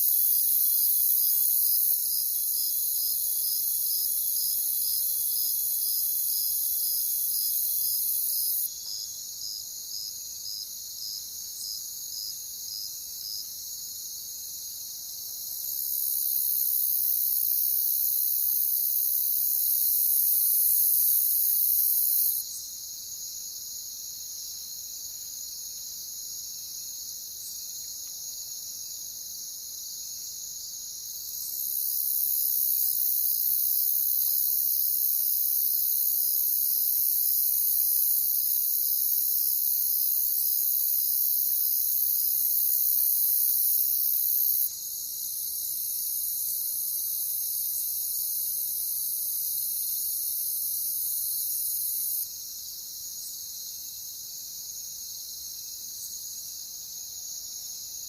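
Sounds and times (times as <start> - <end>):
crickets trilling: 0.0 - 9.6, 31.4 - 44.7.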